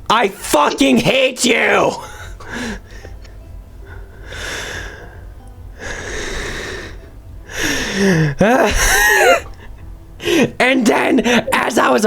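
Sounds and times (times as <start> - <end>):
man breathing hard: 2.0 - 10.6
man crying out: 8.0 - 9.5
man groaning: 8.1 - 9.4.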